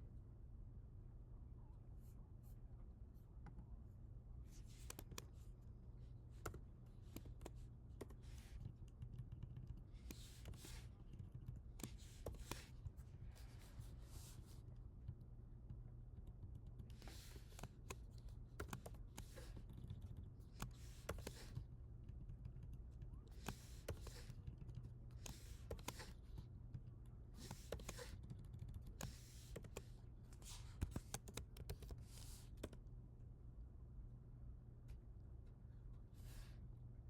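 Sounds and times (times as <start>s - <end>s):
typing on computer keyboard: 4.7s - 5.3s, 6.4s - 12.9s, 15.1s - 32.8s.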